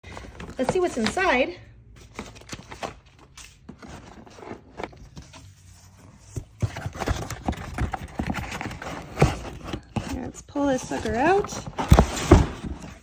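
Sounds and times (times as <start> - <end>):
cardboard packaging being handled: 2.0 - 13.0.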